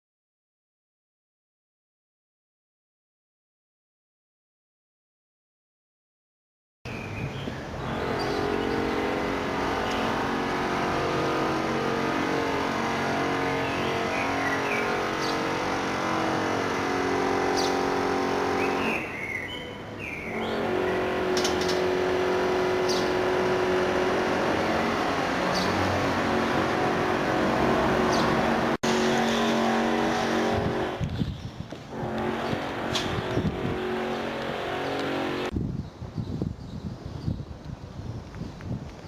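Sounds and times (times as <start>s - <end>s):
motor running steadily: 7.8s - 19.1s, 20.3s - 31.1s, 31.9s - 35.5s
short bird-like chirps: 18.6s - 20.6s.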